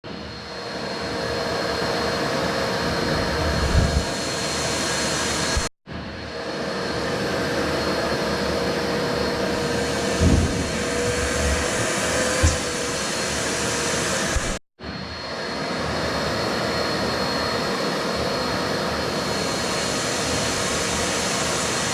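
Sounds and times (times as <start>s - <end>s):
shop vac whining: 2.7s - 5.7s, 6.4s - 14.6s
low thumps: 3.4s - 4.1s, 10.1s - 12.9s.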